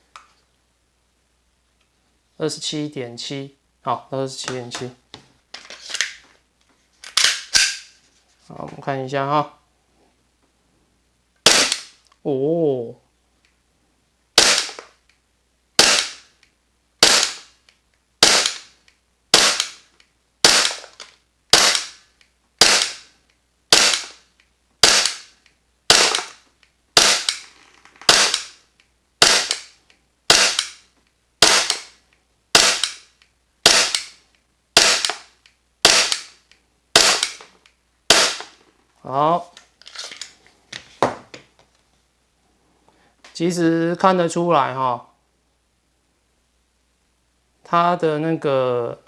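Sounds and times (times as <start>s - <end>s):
airsoft pistol shots: 11.4s - 12.0s, 14.4s - 14.9s, 15.8s - 16.3s, 17.0s - 17.6s, 18.2s - 22.0s, 22.6s - 23.1s, 23.7s - 24.2s, 24.8s - 25.3s, 25.9s - 26.4s, 27.0s - 27.4s, 28.1s - 28.6s, 29.2s - 30.8s, 31.4s - 31.9s, 32.5s - 34.2s, 34.8s - 36.4s, 37.0s - 37.4s, 38.1s - 38.6s.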